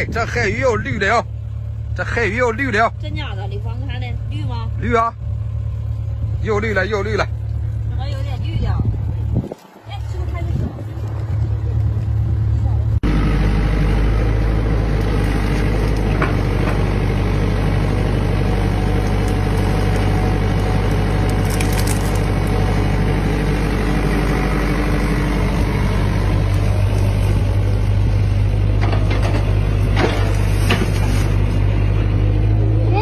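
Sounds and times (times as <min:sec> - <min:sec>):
excavator diesel engine droning: 0:00.0 - 0:09.3, 0:09.9 - 0:33.0.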